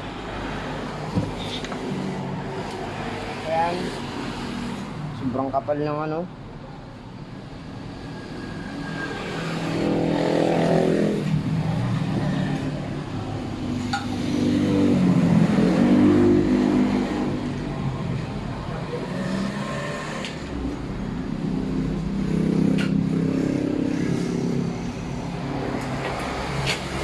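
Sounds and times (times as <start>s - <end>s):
vehicle engines passing: 0.0s - 27.0s.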